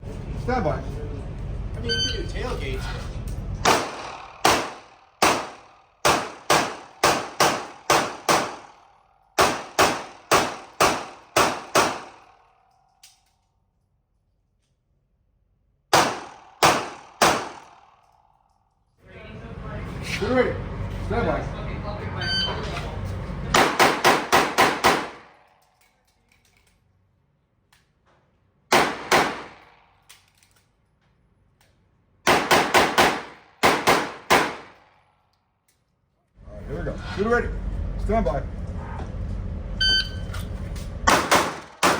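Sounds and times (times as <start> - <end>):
short ringing tone: 1.8 - 2.3, 22.2 - 22.6, 39.8 - 40.4
handgun shots: 3.6 - 8.8, 9.4 - 12.3, 15.9 - 17.9, 23.6 - 25.4, 28.7 - 29.7, 32.3 - 34.8, 41.1 - 41.9.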